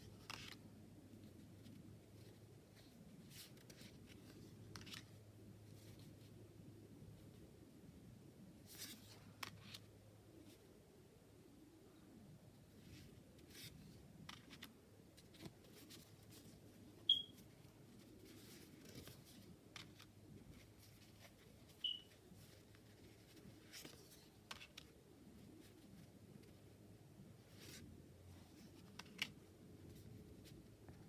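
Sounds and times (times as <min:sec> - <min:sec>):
cards rustling: 0:00.1 - 0:06.3, 0:12.8 - 0:16.8, 0:17.4 - 0:26.6, 0:27.4 - 0:30.7
high-pitched chirps: 0:17.1 - 0:17.3, 0:21.8 - 0:22.1.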